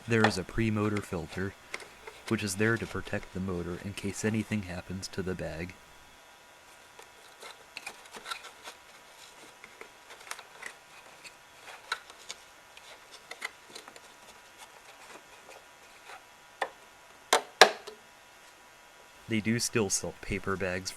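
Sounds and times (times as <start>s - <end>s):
vacuum cleaner parts clicking and rustling: 0.0s - 3.8s.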